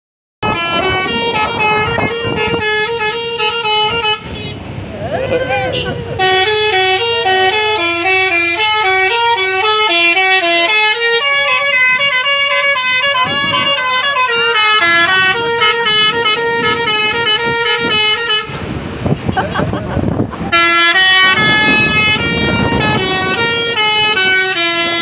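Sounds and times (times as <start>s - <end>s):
musical bus horn tune: 0.4s - 4.8s, 5.6s - 19.2s, 20.4s - 25.0s.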